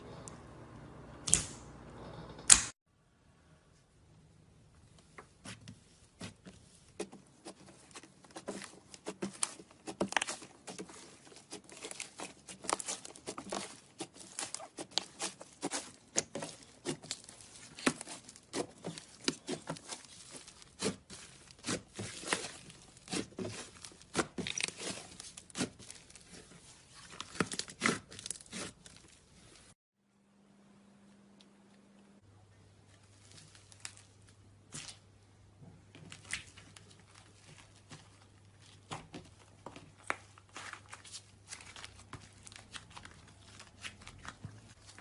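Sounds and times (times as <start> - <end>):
slime squished and stretched: 6.2 - 29.7.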